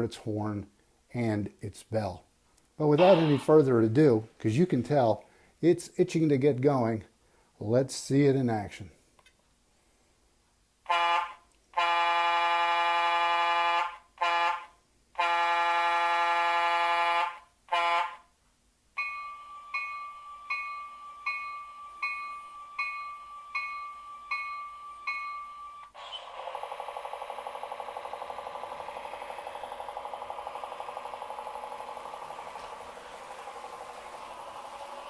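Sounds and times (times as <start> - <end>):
model locomotive horn blasts: 10.9 - 18.3, 19.0 - 26.2
locomotive bell ringing: 19.0 - 25.9.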